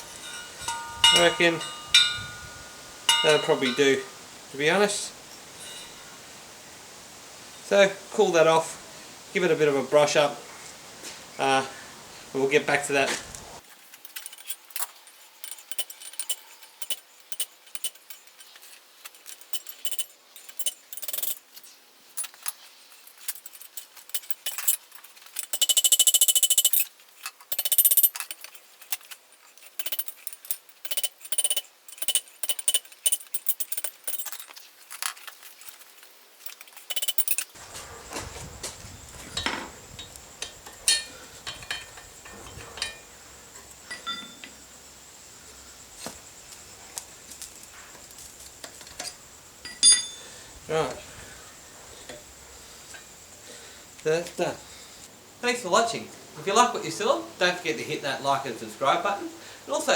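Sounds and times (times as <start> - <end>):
wire brush scrubbing metal: 0.0 - 4.1
steel parts clinking and scraping: 0.0 - 4.2, 5.3 - 6.0, 13.6 - 44.6, 48.6 - 50.4
steady high hum: 0.0 - 5.4.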